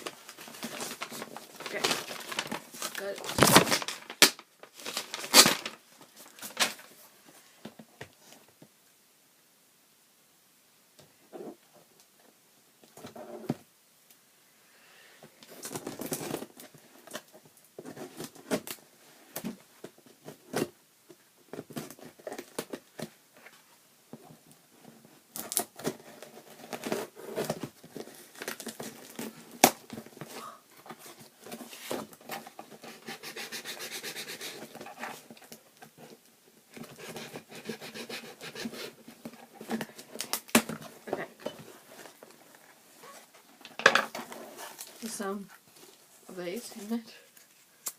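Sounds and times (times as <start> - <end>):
paper crinkling and tearing: 0.0 - 6.9.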